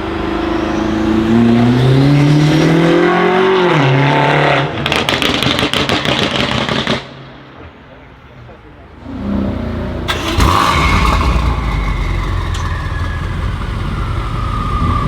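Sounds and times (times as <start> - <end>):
car engine accelerating: 9.0 - 15.0.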